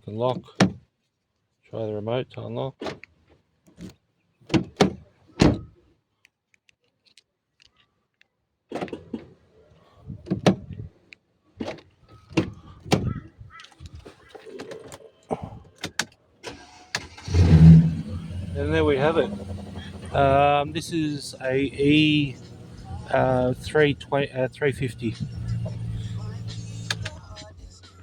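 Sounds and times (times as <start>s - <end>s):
car door locks clicking: 25.5s - 27.2s.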